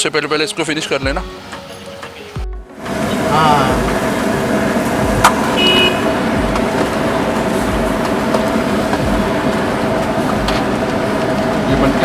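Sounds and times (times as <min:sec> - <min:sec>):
engine hum: 0:00.0 - 0:12.0
street traffic: 0:00.0 - 0:12.0
short high beep: 0:05.6 - 0:06.1.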